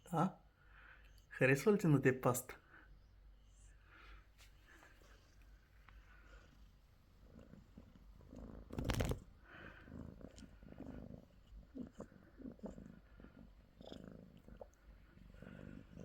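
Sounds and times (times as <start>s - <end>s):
cat purring: 3.5s - 16.0s.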